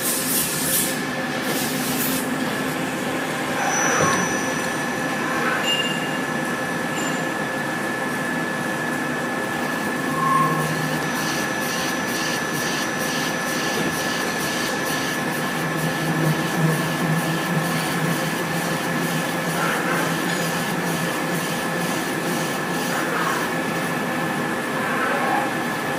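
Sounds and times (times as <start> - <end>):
industrial machine whine and rumble: 0.0 - 25.9
short loud tone: 5.6 - 6.3.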